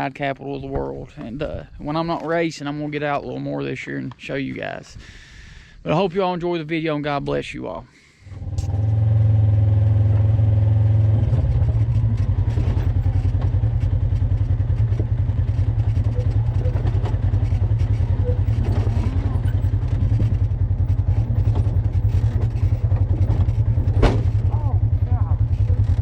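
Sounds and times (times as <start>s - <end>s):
vehicle engine running: 8.3s - 26.0s.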